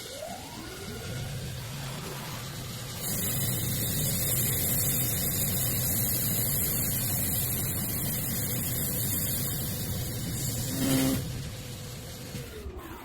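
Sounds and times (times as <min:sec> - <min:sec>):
lathe machining wood: 0:10.4 - 0:11.3.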